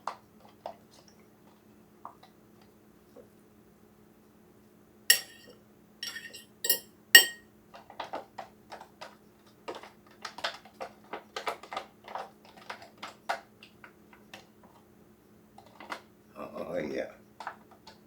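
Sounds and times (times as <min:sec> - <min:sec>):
fork clinking against bowl: 0:05.1 - 0:07.4
fork taps and scrapes: 0:05.1 - 0:07.4.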